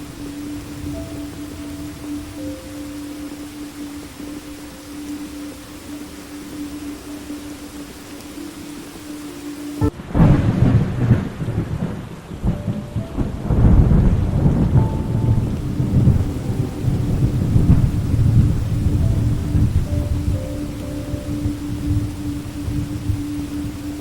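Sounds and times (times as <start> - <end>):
steady rain: 0.0 - 24.0
thunderclap rolling into rumble: 9.8 - 24.0.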